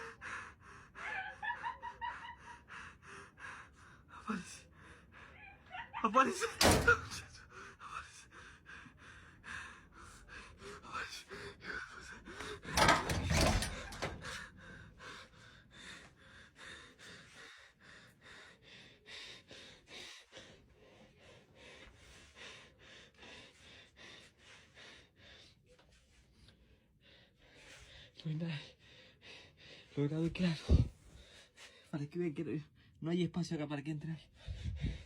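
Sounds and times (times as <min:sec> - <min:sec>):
person breathing fast and hard: 0:07.0 - 0:31.9, 0:34.2 - 0:35.0.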